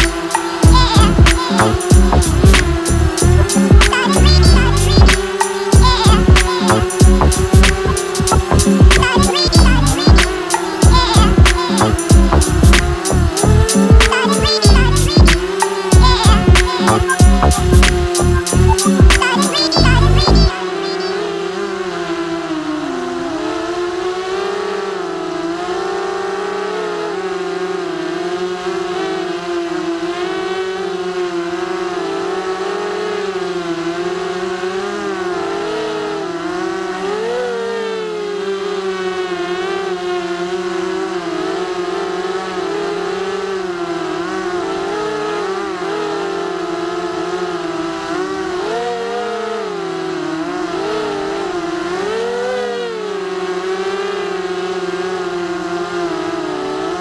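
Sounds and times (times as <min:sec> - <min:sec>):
drone motors whining: 0:00.0 - 0:23.4.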